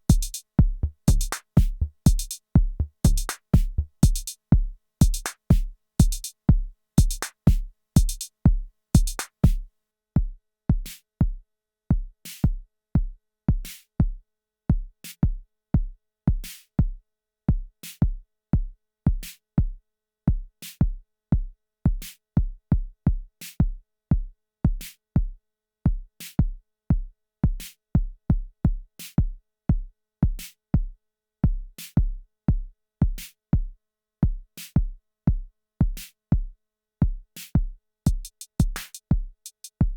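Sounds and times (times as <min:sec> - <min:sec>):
deep kick drum beat: 0:00.0 - 0:09.6, 0:38.1 - 0:39.9
hi-hat pattern: 0:00.0 - 0:09.6, 0:38.1 - 0:39.9.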